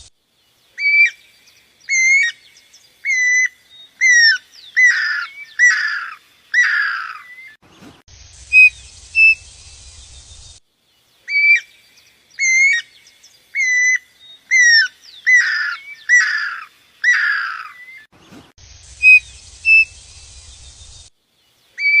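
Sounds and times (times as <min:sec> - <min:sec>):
faint hiss: 0:00.0 - 0:06.6, 0:07.3 - 0:17.1, 0:17.7 - 0:22.0
bird whistling: 0:08.4 - 0:10.5, 0:19.0 - 0:21.0.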